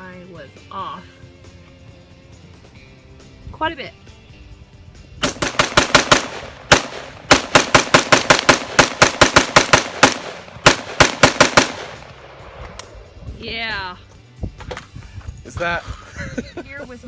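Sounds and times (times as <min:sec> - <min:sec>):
rifle firing rapid shots: 0:05.2 - 0:12.4.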